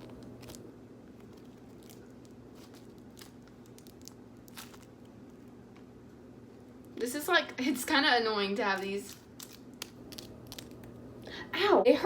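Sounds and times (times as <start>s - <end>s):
plastic packaging crinkling: 0.0s - 5.8s, 8.4s - 11.3s
low steady hum: 0.0s - 12.0s.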